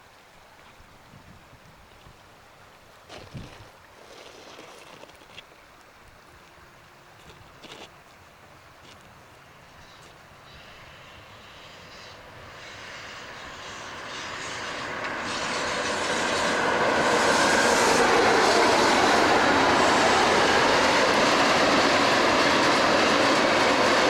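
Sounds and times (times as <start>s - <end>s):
train wheels rushing on rails: 9.4s - 24.0s.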